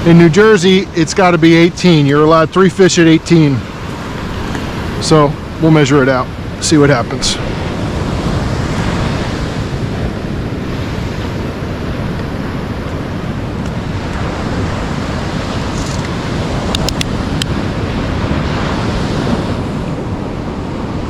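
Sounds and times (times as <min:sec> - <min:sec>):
ocean surf breaking: 0:00.0 - 0:21.0
wind buffeting microphone: 0:00.0 - 0:21.0.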